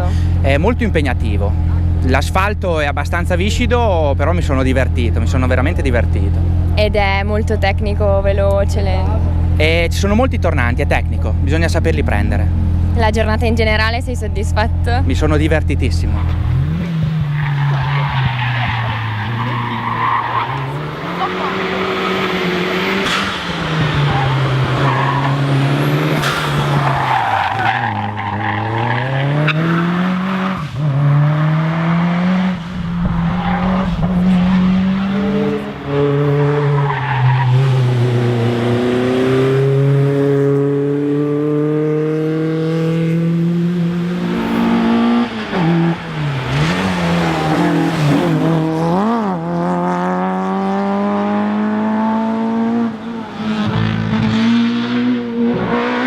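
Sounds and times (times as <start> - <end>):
racing car engine revving: 14.7 - 56.0
tyres squealing: 17.3 - 30.6.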